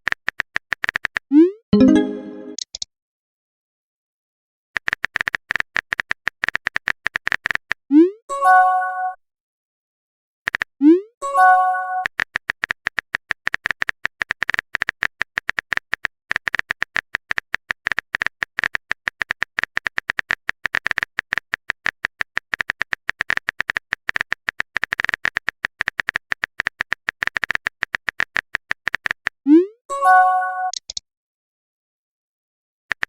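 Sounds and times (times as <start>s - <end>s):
phone keyboard typing clicks: 12.0s - 29.4s, 30.7s - 31.0s.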